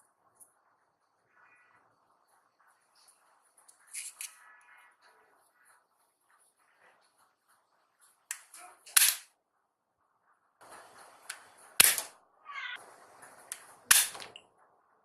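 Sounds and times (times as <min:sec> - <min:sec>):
toy gun shots: 0:08.3 - 0:09.3, 0:11.3 - 0:12.2, 0:13.5 - 0:14.4
toy gun click: 0:11.8 - 0:12.1, 0:13.5 - 0:14.4.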